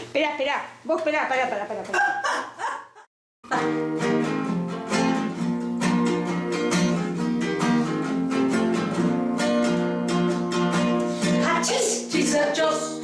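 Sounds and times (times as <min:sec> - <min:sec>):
strummed acoustic guitar: 0:03.5 - 0:13.0.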